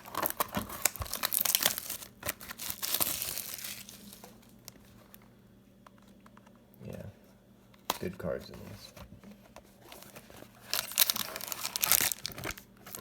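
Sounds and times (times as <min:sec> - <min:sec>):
plastic wrapping crinkling and tearing: 0:00.0 - 0:05.2, 0:09.8 - 0:13.0.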